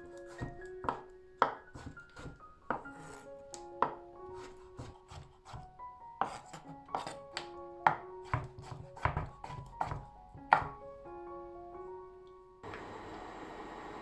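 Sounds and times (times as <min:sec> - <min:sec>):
knife chopping on cutting board: 0:00.2 - 0:10.8.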